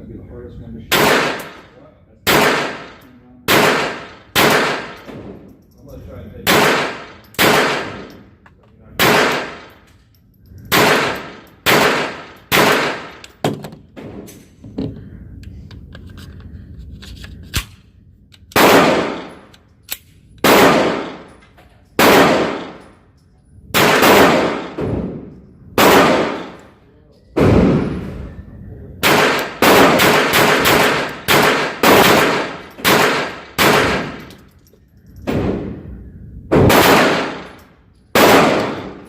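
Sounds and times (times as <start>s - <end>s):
gunshots: 0.9s - 1.7s, 2.3s - 5.4s, 6.4s - 8.1s, 9.0s - 9.7s, 10.7s - 13.2s, 18.6s - 19.4s, 20.4s - 21.3s, 22.0s - 22.8s, 23.8s - 26.6s, 27.4s - 28.2s, 29.0s - 34.2s, 36.5s - 37.6s, 38.2s - 39.0s.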